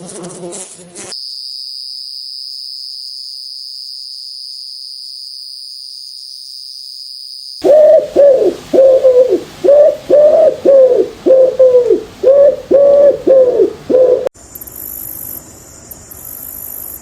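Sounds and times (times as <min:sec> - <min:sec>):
bird calling short pitched calls: 0:07.6 - 0:14.3.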